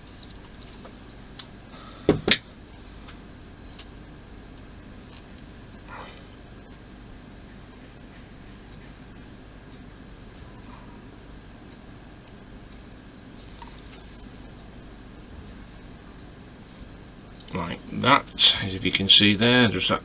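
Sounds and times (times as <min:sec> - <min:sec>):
small bird chirping: 0:01.8 - 0:20.0
sharp knocks on bench: 0:02.1 - 0:02.4.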